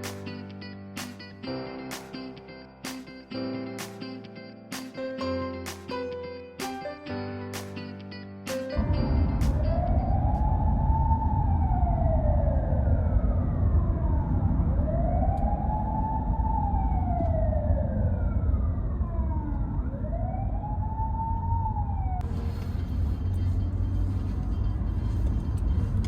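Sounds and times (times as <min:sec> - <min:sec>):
low traffic rumble: 0:08.8 - 0:26.0
wailing siren: 0:08.8 - 0:26.0.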